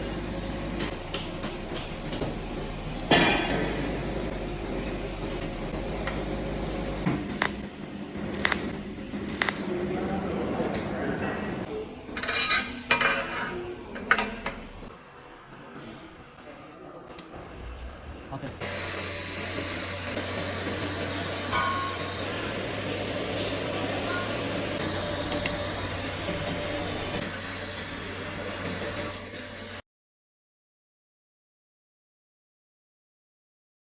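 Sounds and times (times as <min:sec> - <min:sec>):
welding machine humming: 0:00.0 - 0:11.7, 0:18.6 - 0:29.8
loud metallic clank: 0:21.4 - 0:22.5.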